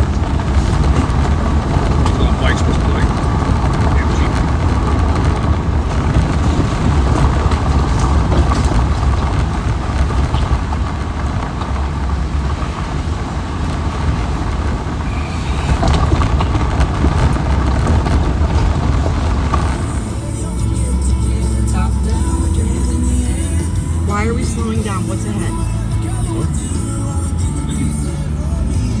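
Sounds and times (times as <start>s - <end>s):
knocks and rattles: 0.0s - 21.5s
off-road vehicle engine rumble: 0.0s - 29.0s.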